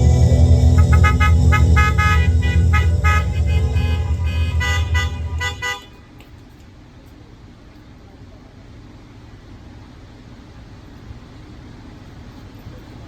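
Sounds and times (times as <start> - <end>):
car horns honking: 0.0 - 6.1
low steady drone: 0.0 - 6.1.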